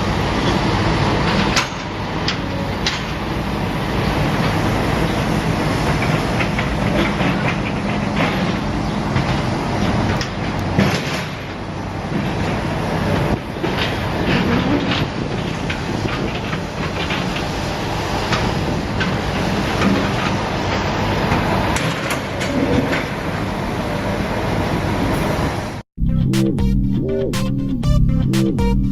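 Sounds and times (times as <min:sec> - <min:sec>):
demolition machine engine rumble: 0:00.0 - 0:25.8
clanking and crunching: 0:01.2 - 0:23.4
sharp knocks: 0:01.3 - 0:03.2.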